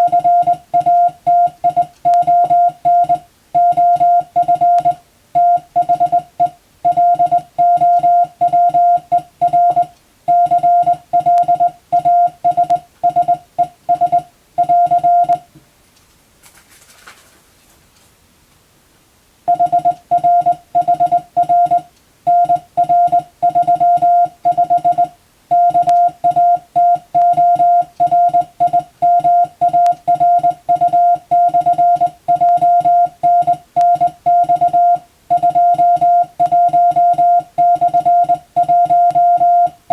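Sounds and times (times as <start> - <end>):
morse code tone: 0.0 - 15.5, 19.5 - 39.9.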